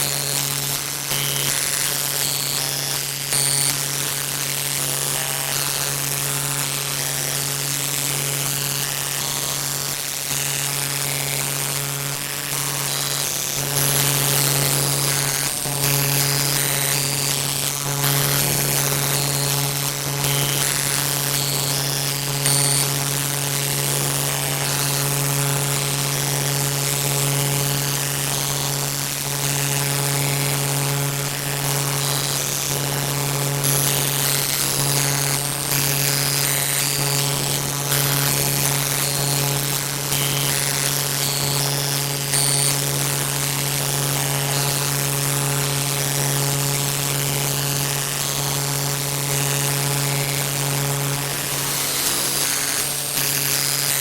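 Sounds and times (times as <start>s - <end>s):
low buzzing drone: 46.8s - 54.0s.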